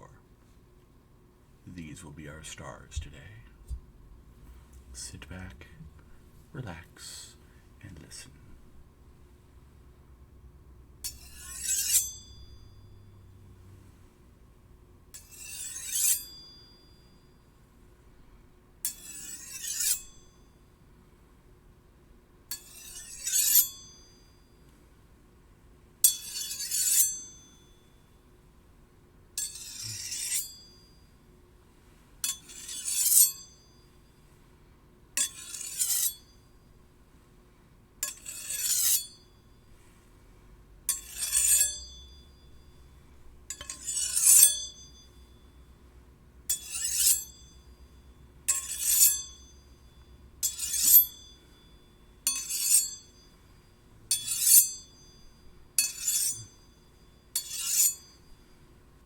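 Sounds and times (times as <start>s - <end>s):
steel blades scraping together: 11.1s - 12.4s, 15.2s - 16.4s, 18.9s - 20.1s, 22.6s - 23.8s, 26.1s - 27.4s, 29.4s - 30.7s, 32.2s - 33.6s, 35.2s - 36.3s, 38.0s - 39.2s, 40.9s - 42.0s, 43.5s - 45.0s, 46.5s - 47.6s, 48.5s - 49.6s, 50.4s - 51.3s, 52.3s - 53.2s, 54.1s - 55.1s, 55.8s - 56.8s, 57.4s - 58.3s.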